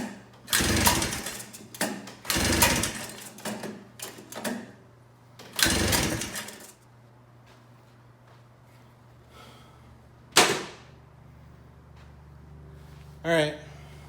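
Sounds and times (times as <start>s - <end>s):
engine cranking without firing: 0.0s - 4.6s, 5.5s - 6.8s.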